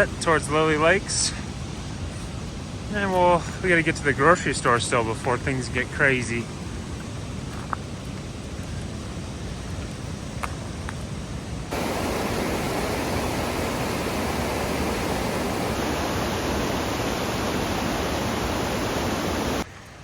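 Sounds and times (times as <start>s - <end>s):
creek falls and rapids rushing: 0.0s - 9.3s, 11.7s - 19.7s.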